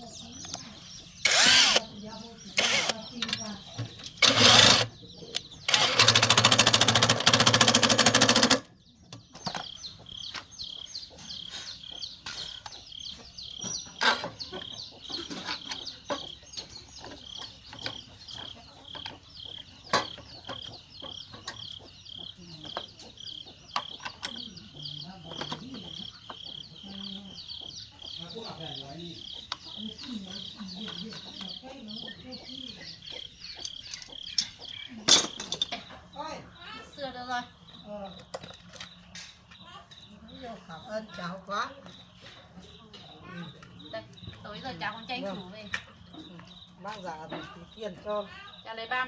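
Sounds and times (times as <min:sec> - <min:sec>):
small engine running: 0:01.2 - 0:01.9, 0:02.6 - 0:03.0, 0:04.2 - 0:04.9, 0:05.7 - 0:08.7.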